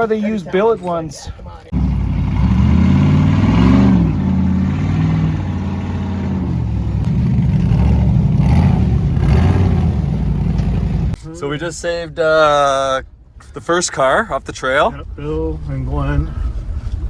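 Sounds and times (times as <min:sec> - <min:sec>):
buggy engine running: 0:01.7 - 0:11.2.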